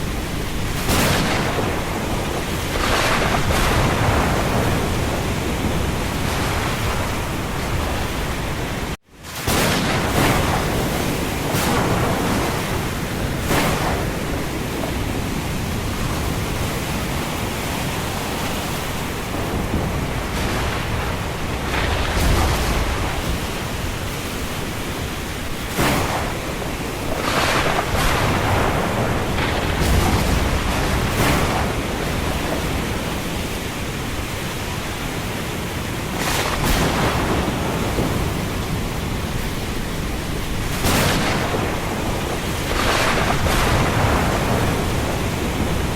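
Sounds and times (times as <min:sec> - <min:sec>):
thunder cracks: 0:00.0 - 0:34.8, 0:36.1 - 0:45.9
deep thunder rumbles: 0:00.0 - 0:35.2, 0:36.0 - 0:45.9
rush of wind: 0:00.0 - 0:45.9.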